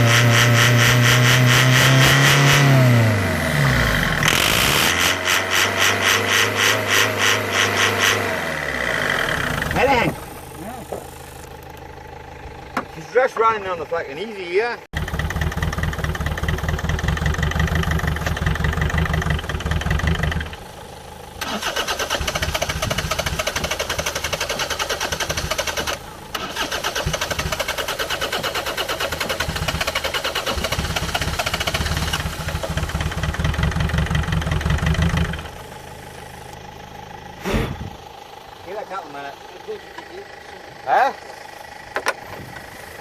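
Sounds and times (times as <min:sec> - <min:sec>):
diesel engine firing: 0:00.0 - 0:14.2, 0:14.9 - 0:43.0
starter cranking engine: 0:07.9 - 0:12.0, 0:15.0 - 0:20.6, 0:21.4 - 0:35.6.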